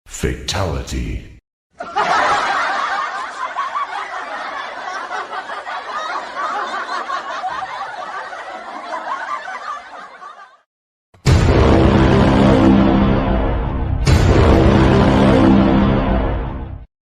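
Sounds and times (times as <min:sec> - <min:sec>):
crowd laughing: 0:01.8 - 0:10.7
loud music: 0:11.2 - 0:16.9.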